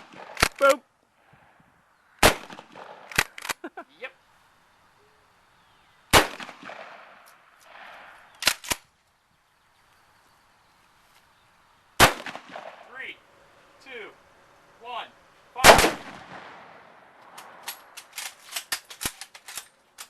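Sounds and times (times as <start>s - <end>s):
smaller gunshots: 0.0s - 0.8s, 2.2s - 3.6s, 6.1s - 8.8s, 12.0s - 12.9s, 15.6s - 17.6s
loud gunshots: 2.2s - 3.3s, 6.1s - 8.1s, 12.0s - 12.8s, 15.6s - 16.8s.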